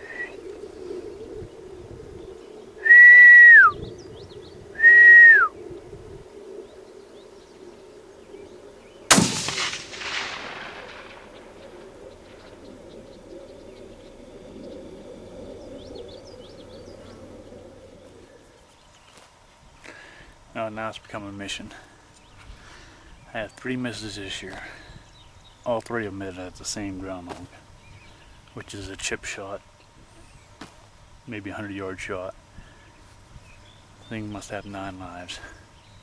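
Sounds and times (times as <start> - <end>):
whistles: 0.0 - 0.4, 2.8 - 3.9, 4.8 - 5.6
rifle shot echoing: 9.1 - 13.2.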